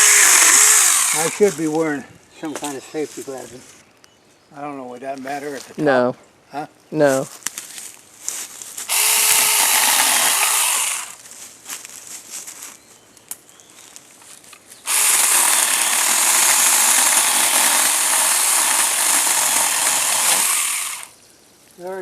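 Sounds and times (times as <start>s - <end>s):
mini chainsaw cutting wood: 0.0s - 1.5s, 8.9s - 11.2s, 14.9s - 21.1s.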